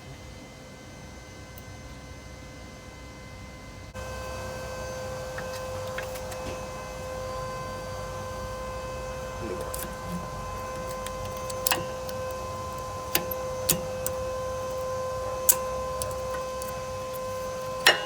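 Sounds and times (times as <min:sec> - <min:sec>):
steady humming tone: 0:00.0 - 0:18.0
hand tools clicking and knocking: 0:09.6 - 0:18.0.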